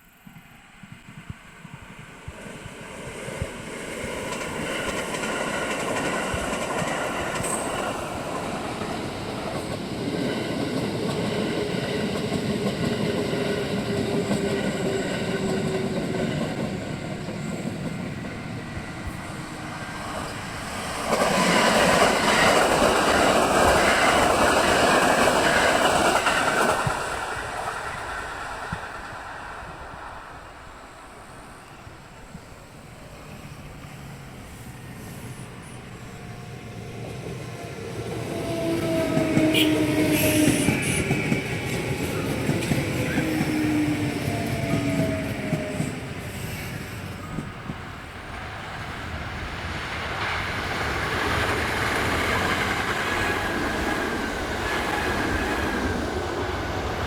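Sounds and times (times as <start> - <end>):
electric train passing: 0.0 - 57.0.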